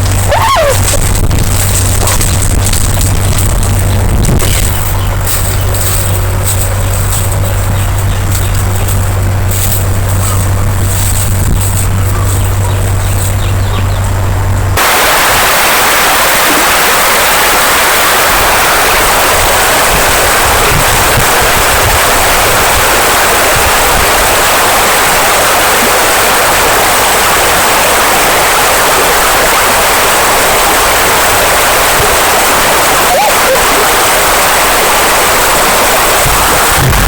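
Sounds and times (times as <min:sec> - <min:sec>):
river water rushing: 0:14.8 - 0:37.0.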